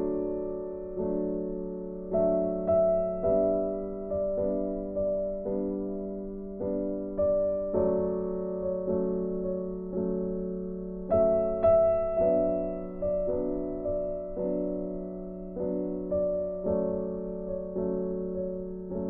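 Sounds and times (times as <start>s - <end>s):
slow soft piano music: 0.0s - 19.0s.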